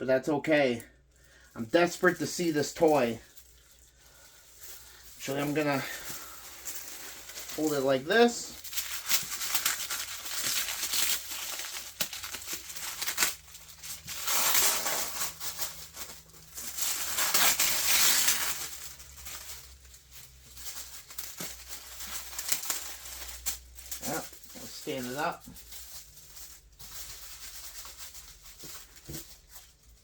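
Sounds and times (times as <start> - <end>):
packaging rustling and crinkling: 0.6 - 30.0.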